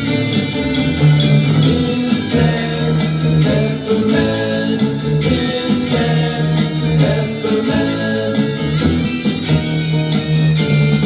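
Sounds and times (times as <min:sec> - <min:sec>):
psychedelic pop band playing: 0:00.0 - 0:11.0.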